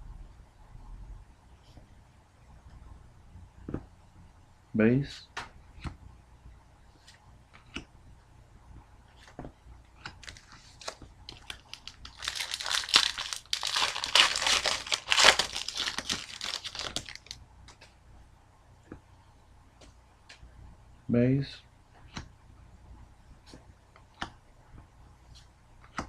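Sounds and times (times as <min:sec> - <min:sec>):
foil wrapper tearing and crinkling: 0:10.2 - 0:17.4.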